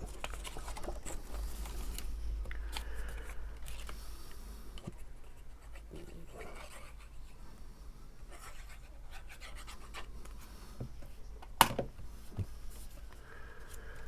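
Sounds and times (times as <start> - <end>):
cardstock rustling and clicking: 0.0 - 5.1.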